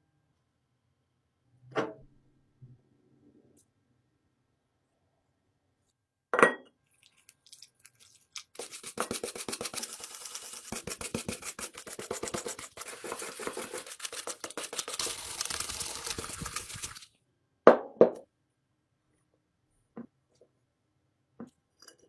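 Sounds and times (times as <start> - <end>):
brush scrubbing hard surface: 7.9 - 17.1.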